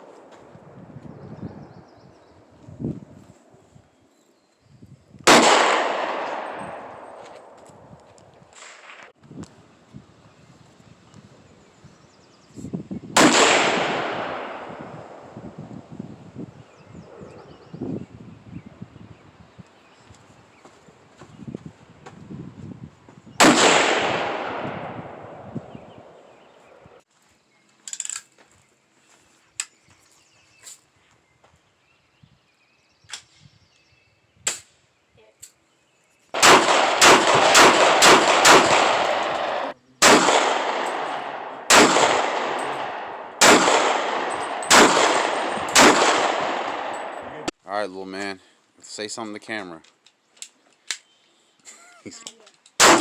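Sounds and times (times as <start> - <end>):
gunshots with echoing tail: 5.3 - 7.9, 13.2 - 15.4, 23.4 - 26.3, 36.4 - 47.5, 52.8 - 53.0.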